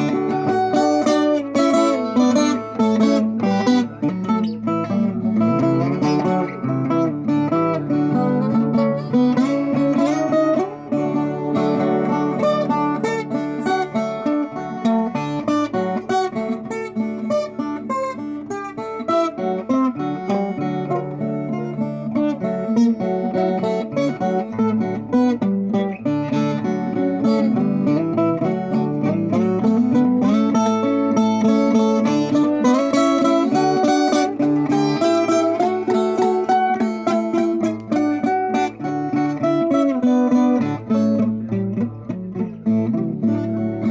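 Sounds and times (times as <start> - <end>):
plucked steel-string guitar melody: 0.0 - 43.9.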